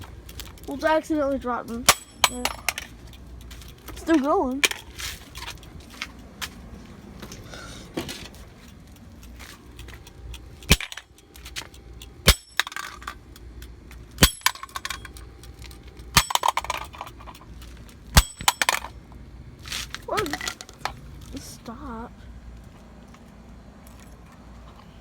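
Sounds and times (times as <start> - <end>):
small clatters: 0.0 - 21.4
kitchen timer being smashed: 1.8 - 2.9, 10.6 - 11.1, 12.2 - 13.2, 14.2 - 15.4, 16.0 - 17.4, 18.1 - 18.9.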